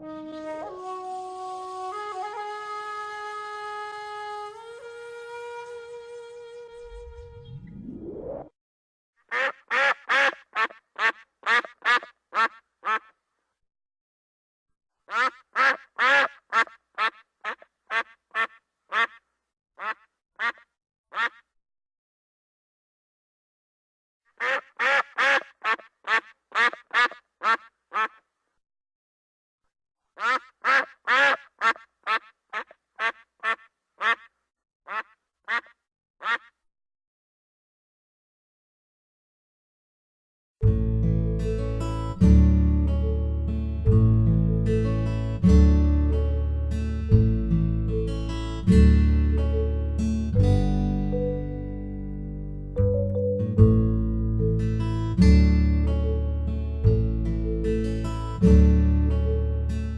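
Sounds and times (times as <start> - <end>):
rising sweep: 6.8 - 8.5
duck quacking: 9.3 - 13.2, 15.1 - 19.2, 19.8 - 21.5, 24.4 - 28.3, 30.2 - 36.6.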